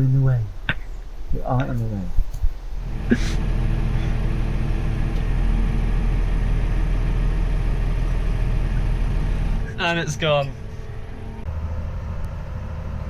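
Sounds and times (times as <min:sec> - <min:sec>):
farm vehicle engine running: 0:02.8 - 0:13.0.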